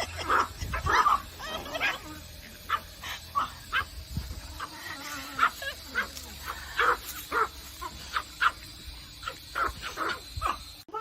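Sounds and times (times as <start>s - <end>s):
dog barking: 2.7s - 4.0s, 5.3s - 10.8s.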